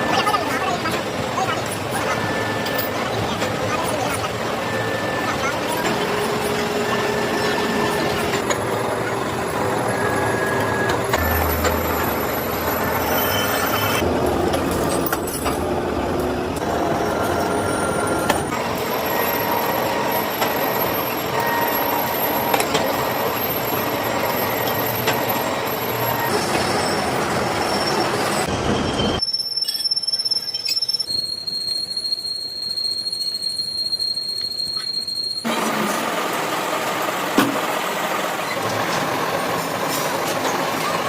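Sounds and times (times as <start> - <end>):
thin squealing tones: 19.2 - 35.5.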